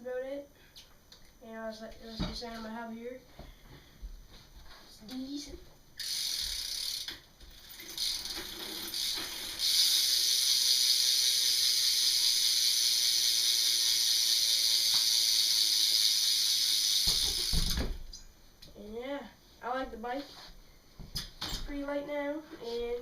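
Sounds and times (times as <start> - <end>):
freewheel ratchet buzzing: 6.0 - 17.8.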